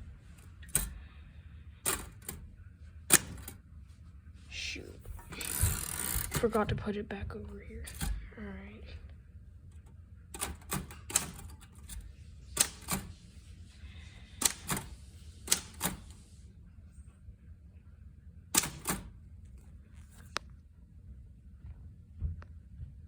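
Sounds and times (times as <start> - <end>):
typewriter keys clacking: 10.4 - 12.0, 12.6 - 13.1, 14.4 - 14.9, 15.5 - 16.1, 18.6 - 19.1.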